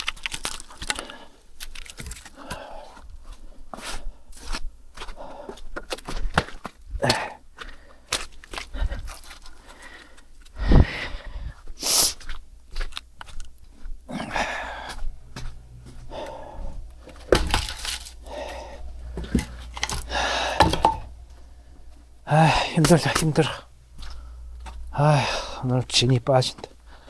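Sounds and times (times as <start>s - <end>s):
heavy breaths: 2.3s - 6.3s, 6.9s - 12.3s, 13.8s - 25.8s, 26.6s - 27.0s
firewood knocking and cracking: 17.0s - 21.4s.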